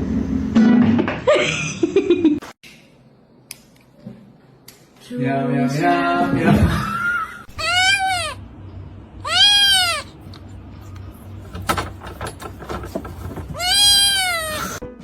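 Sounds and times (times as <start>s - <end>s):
cat meowing: 7.5s - 8.4s, 9.2s - 10.1s, 13.6s - 14.8s.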